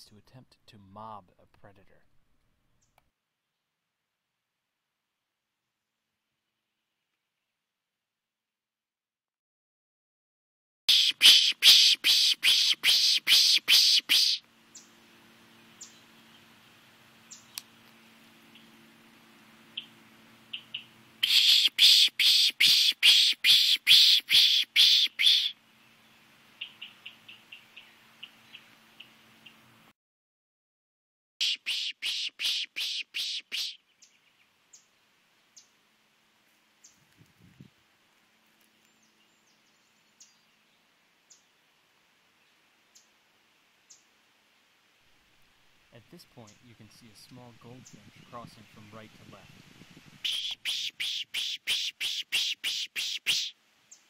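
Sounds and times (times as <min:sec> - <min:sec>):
songbird chip notes: 0:10.9 - 0:29.7, 0:46.0 - 0:54.0
background hiss: 0:10.9 - 0:29.9, 0:31.4 - 0:54.0
low steady hum: 0:14.4 - 0:21.8, 0:25.5 - 0:29.9, 0:33.8 - 0:50.7
faint high bird chirps: 0:50.2 - 0:54.0.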